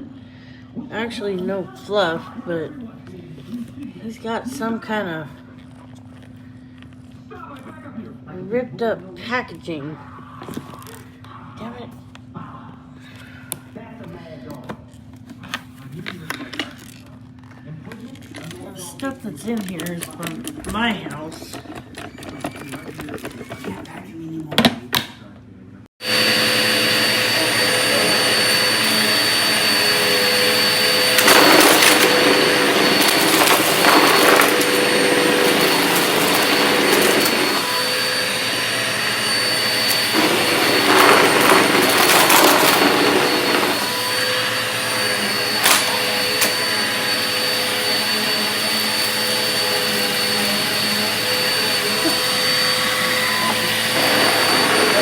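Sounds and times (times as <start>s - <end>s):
vacuum cleaner running: 26.0s - 55.0s
vacuum sucking up debris: 26.0s - 55.0s.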